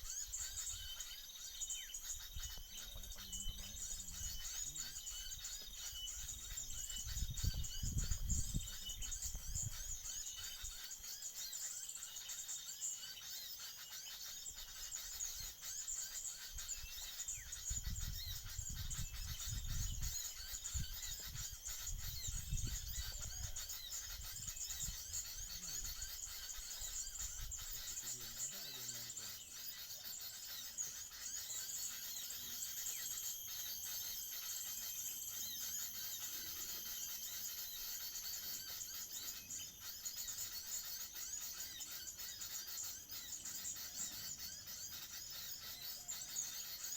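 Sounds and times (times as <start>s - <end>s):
high bird chirps: 0.0s - 46.9s
insects droning: 0.0s - 46.9s
wind rumble on microphone: 2.2s - 10.2s, 16.6s - 26.1s.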